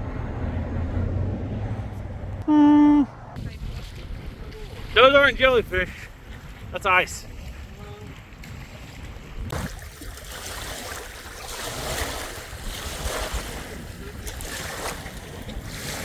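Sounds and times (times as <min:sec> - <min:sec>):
moving water: 0:00.0 - 0:16.0
wind: 0:00.0 - 0:16.0.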